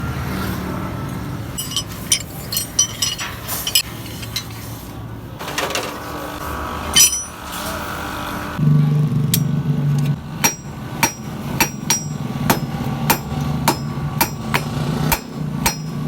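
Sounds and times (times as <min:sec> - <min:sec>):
metal tools clinking: 0:01.5 - 0:04.6, 0:06.9 - 0:07.8, 0:10.5 - 0:12.8.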